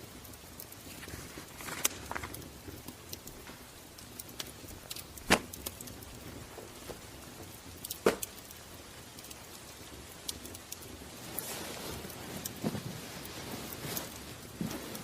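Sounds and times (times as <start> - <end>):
crackling and ticking: 0.0 - 15.0
soft steady hiss: 0.0 - 15.0
loud sharp cracks: 5.2 - 5.8.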